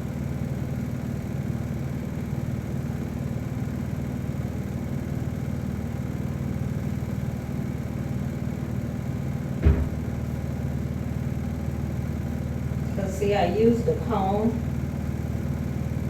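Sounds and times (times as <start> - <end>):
low background hum: 0.0 - 16.0
brief thump: 9.6 - 10.1.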